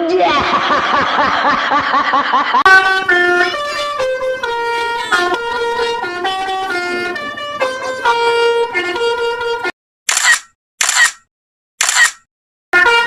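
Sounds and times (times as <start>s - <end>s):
short noisy bursts: 10.1s - 11.2s, 11.8s - 12.2s.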